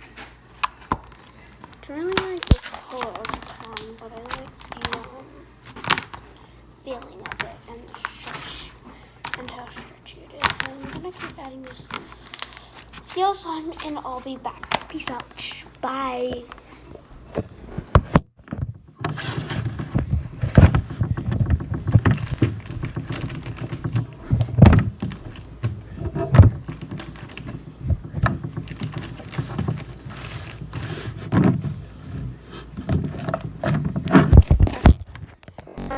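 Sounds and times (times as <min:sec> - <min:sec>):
handling thunks and knocks: 0:17.8 - 0:35.1.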